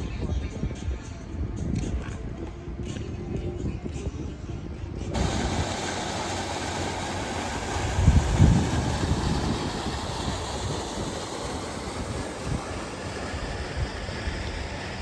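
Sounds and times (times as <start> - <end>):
wind buffeting microphone: 0.0 - 15.0
outdoor rushing noise: 5.2 - 15.0.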